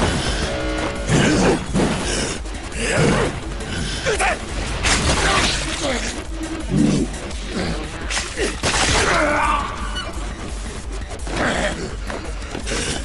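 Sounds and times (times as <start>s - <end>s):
grunts: 11.3s - 13.0s.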